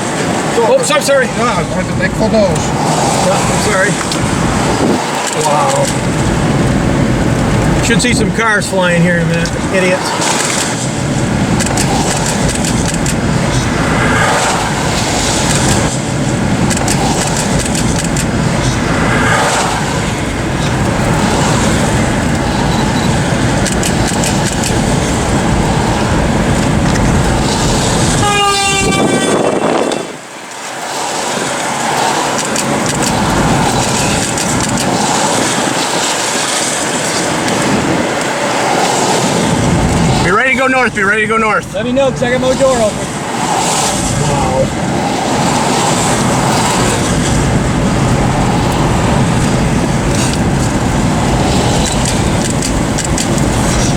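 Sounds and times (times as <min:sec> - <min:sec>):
tornado wind rumble: 0:00.0 - 0:53.9.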